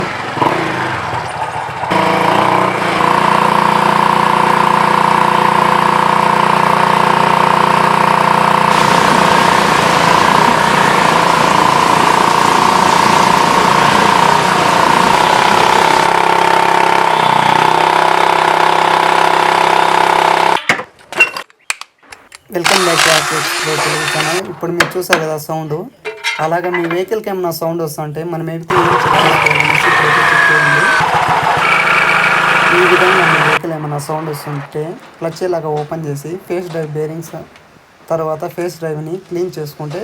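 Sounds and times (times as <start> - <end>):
scooter engine running: 0.0 - 20.6, 22.6 - 24.4, 28.7 - 34.7.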